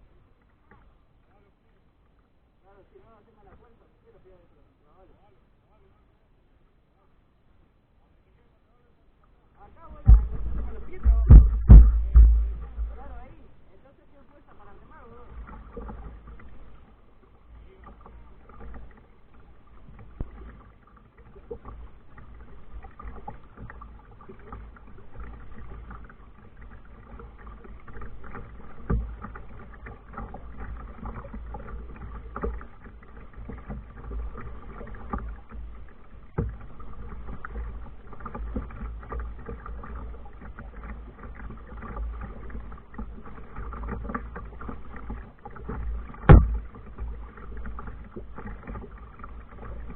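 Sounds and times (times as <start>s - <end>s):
water wash: 9.6s - 49.9s
low rumble: 9.8s - 13.5s
knocks against kayak hull: 10.0s - 13.3s, 45.7s - 47.1s.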